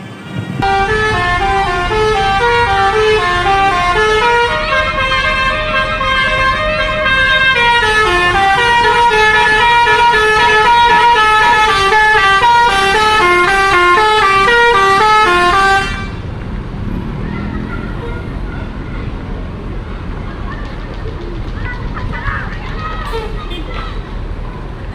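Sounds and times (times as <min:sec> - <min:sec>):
musical bus horn melody: 0:00.6 - 0:16.3.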